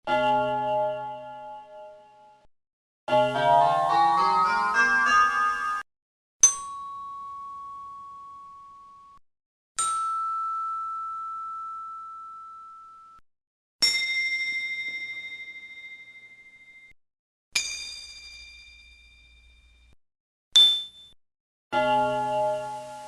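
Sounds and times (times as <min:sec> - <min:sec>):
bell ringing: 0:03.1 - 0:05.8.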